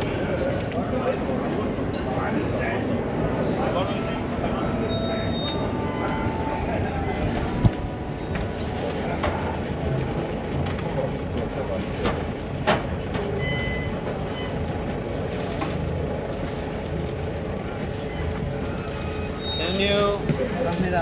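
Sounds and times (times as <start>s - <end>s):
yacht rumble at sea: 0.0s - 21.0s.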